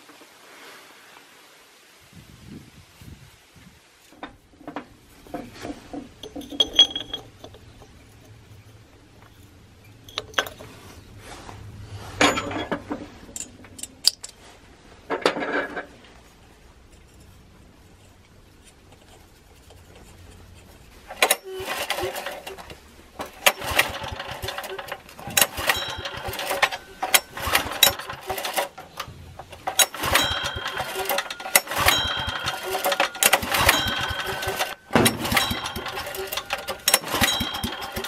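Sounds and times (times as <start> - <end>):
rough rattling: 4.1 - 11.4, 12.1 - 38.0
metal tools clinking: 4.2 - 10.8, 12.2 - 14.5, 20.8 - 38.0.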